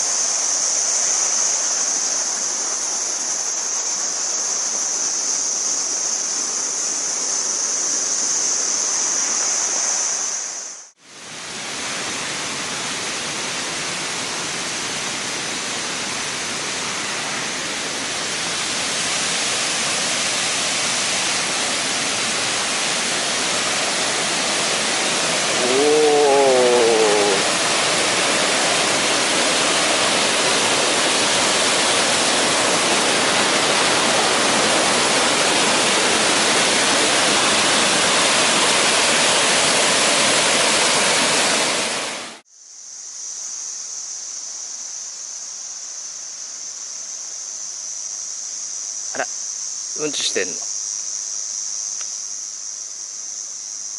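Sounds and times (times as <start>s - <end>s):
waterfall roaring: 11.2s - 42.4s
wavering pitched call: 25.6s - 27.5s.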